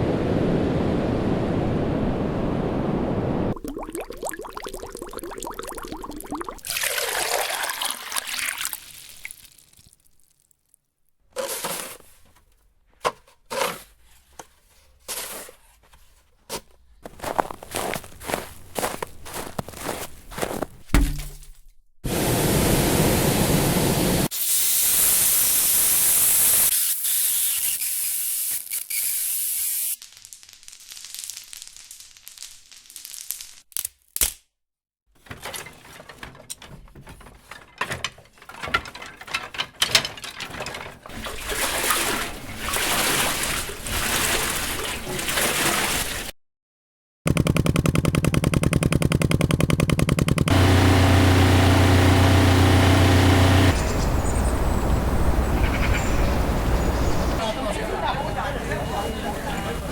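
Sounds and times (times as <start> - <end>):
crackling: 29.6 - 33.7.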